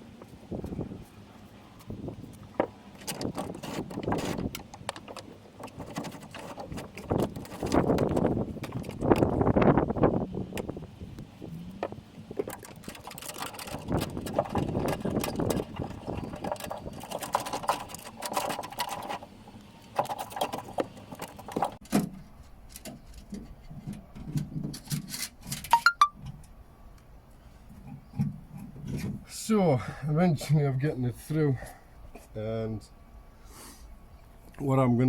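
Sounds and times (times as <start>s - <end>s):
cable rubbing through panels: 3.0s - 9.8s, 11.8s - 21.8s.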